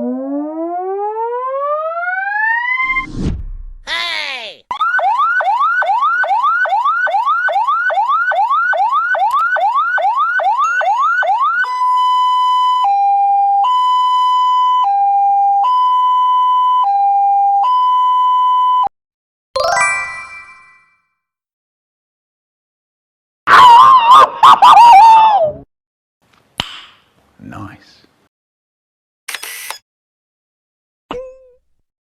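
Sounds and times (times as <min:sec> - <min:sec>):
ambulance siren: 0:00.0 - 0:03.0, 0:04.7 - 0:18.9.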